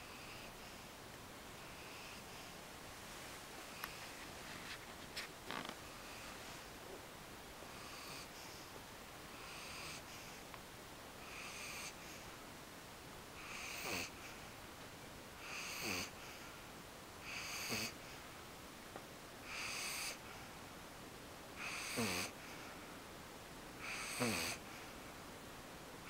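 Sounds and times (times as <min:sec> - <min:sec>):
puppy snoring: 0:07.7 - 0:08.7, 0:09.3 - 0:10.4, 0:11.2 - 0:12.2, 0:13.4 - 0:14.4, 0:15.4 - 0:16.2, 0:17.2 - 0:18.0, 0:19.4 - 0:20.3, 0:21.6 - 0:22.4, 0:23.8 - 0:24.8.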